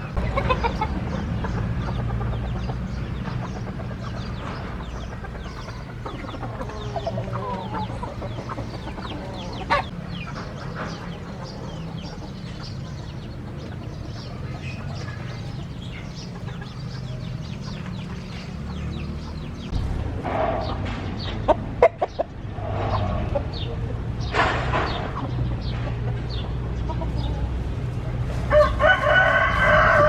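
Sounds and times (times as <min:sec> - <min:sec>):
steady low hum: 0:00.0 - 0:20.1
chickens clucking: 0:00.0 - 0:30.0.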